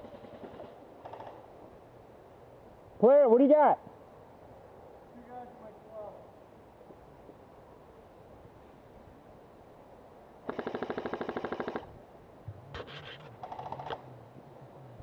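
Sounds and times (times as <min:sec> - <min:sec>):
airsoft rifle automatic fire: 0:10.5 - 0:11.9.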